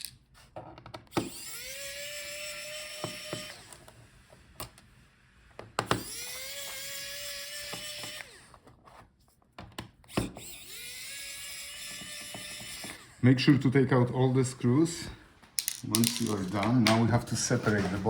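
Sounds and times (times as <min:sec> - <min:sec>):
electric screwdriver whining: 0:01.1 - 0:04.8, 0:05.6 - 0:08.8, 0:09.9 - 0:13.2.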